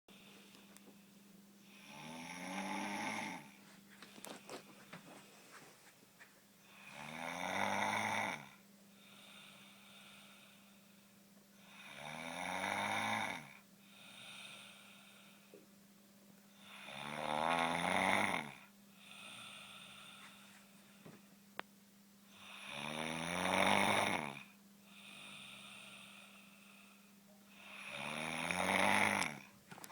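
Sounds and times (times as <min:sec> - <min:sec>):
quiet breathing: 0:00.1 - 0:12.1, 0:12.7 - 0:15.8, 0:18.4 - 0:21.6, 0:24.4 - 0:29.9
loud snoring: 0:01.7 - 0:03.6, 0:06.8 - 0:08.6, 0:11.7 - 0:14.7, 0:16.6 - 0:19.6, 0:22.4 - 0:26.2, 0:27.5 - 0:29.5.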